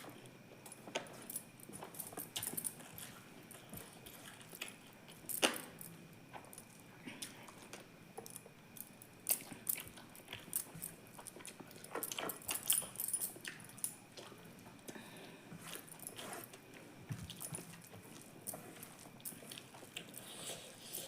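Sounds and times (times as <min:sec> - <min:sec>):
person chewing with mouth smacks: 0:09.3 - 0:21.0.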